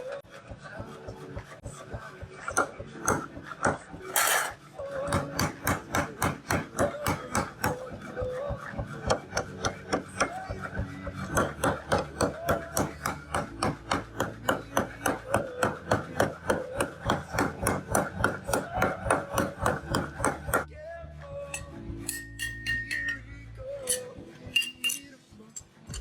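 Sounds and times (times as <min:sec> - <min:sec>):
hammer blows on metal: 0:02.4 - 0:20.7.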